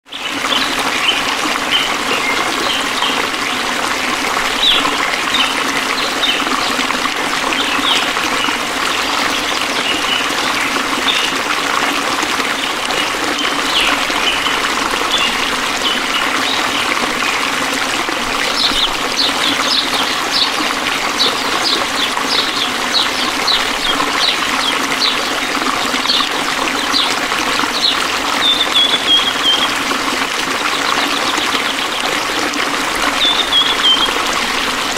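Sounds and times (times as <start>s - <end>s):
small stream trickling: 0.0s - 34.9s.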